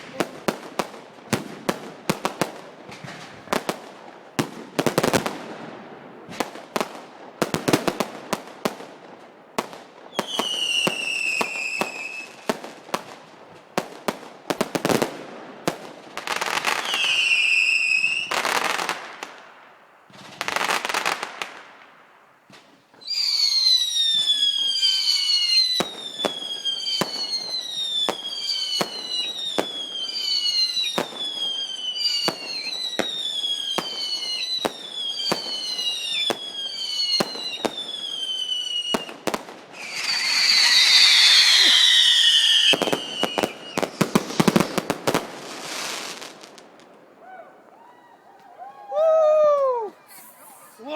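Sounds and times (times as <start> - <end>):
firework bangs and crackling: 0.0 - 48.0
falling firework whistles: 10.1 - 12.6, 16.3 - 19.1, 22.6 - 46.6.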